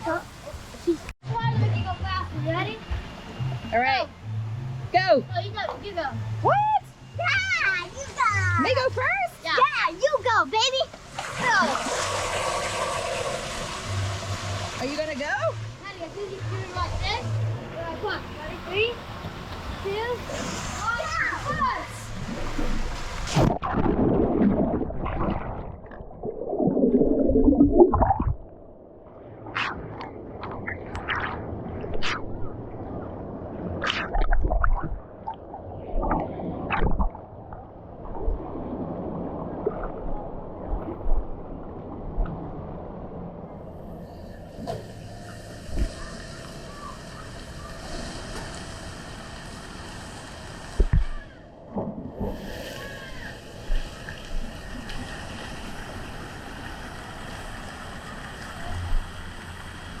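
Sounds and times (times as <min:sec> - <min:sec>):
water rushing: 0:05.8 - 1:00.0
sharp splashes: 0:11.0 - 0:14.9
water rushing down slide: 0:11.1 - 0:15.0
low rumble: 0:22.0 - 0:46.0.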